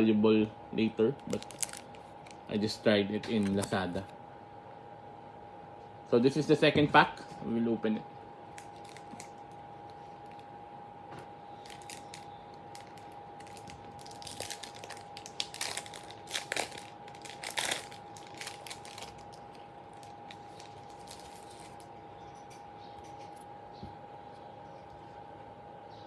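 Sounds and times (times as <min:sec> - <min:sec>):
faint steady high hum: 0:00.0 - 0:26.0
wrapper crinkling: 0:01.2 - 0:02.5, 0:03.3 - 0:04.0, 0:08.5 - 0:10.5, 0:11.6 - 0:21.9.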